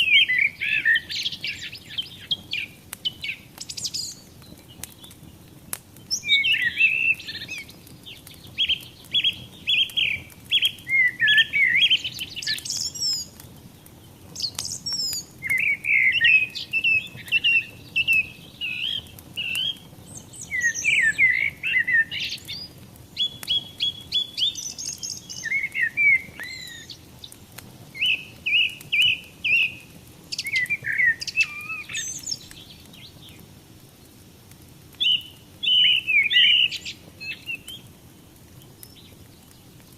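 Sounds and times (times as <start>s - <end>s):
songbirds singing: 0.0s - 34.3s, 34.9s - 39.9s
wood fire crackling: 0.0s - 39.9s.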